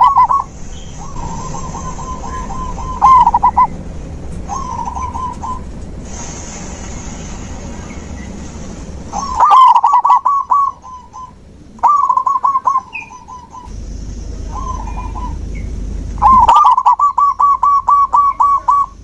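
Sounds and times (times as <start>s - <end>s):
dove cooing: 0.0s - 3.7s, 4.4s - 5.7s, 9.1s - 13.7s, 14.4s - 19.0s
low rumble: 0.0s - 9.4s, 10.3s - 19.0s.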